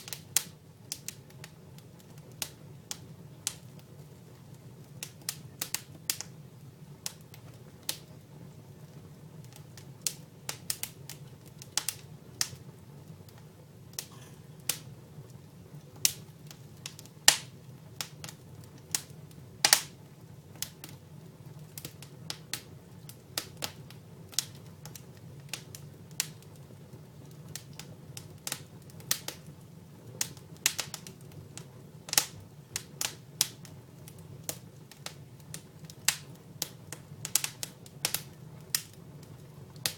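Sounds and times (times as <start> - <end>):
firewood crackling and popping: 0.0 - 39.9
low steady hum: 13.6 - 16.8.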